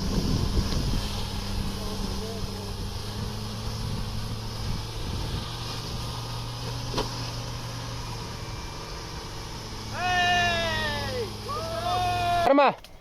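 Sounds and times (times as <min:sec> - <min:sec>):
vehicle engine humming: 0:00.0 - 0:13.0.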